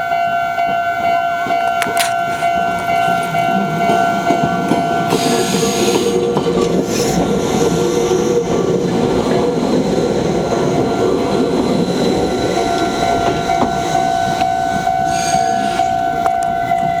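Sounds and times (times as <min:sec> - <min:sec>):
crossing warning bell ringing: 0:00.0 - 0:06.4, 0:10.7 - 0:17.0
train wheels rumbling: 0:00.0 - 0:17.0.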